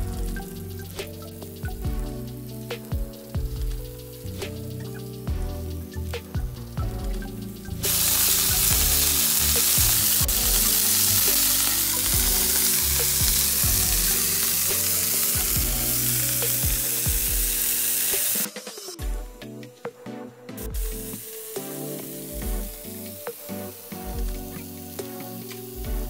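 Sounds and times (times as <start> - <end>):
background music: 0.0 - 26.0
meat sizzling in oil: 7.8 - 18.5.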